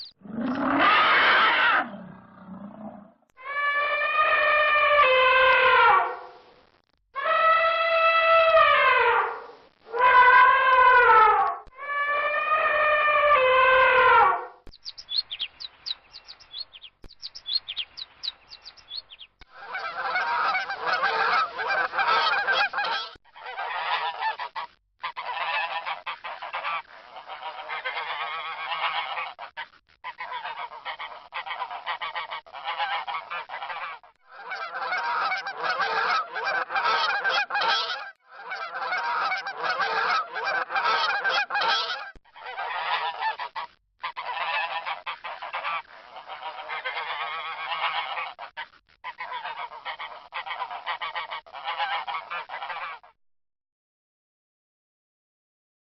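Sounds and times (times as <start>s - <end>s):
finch chirps: 14.7s - 19.4s
geese honking: 18.9s - 53.1s.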